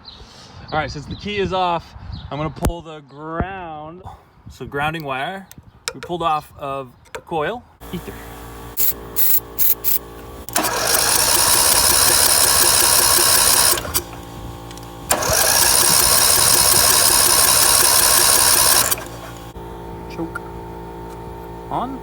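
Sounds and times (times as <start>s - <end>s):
engine cranking without catching: 8.8s - 19.6s.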